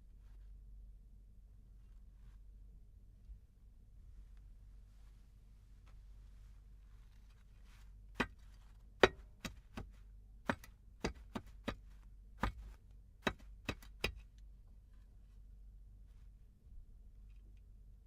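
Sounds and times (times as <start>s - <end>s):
digging hoe striking ground: 8.1s - 14.4s.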